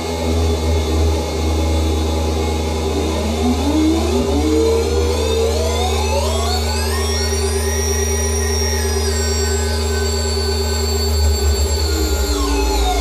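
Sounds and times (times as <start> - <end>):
synthesizer low buzzing drone: 0.0 - 13.0
synthesizer rising glides: 0.0 - 13.0.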